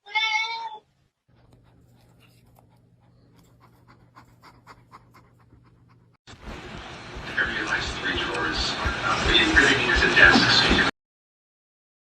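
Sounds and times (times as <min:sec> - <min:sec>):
dog panting: 0:01.3 - 0:06.2.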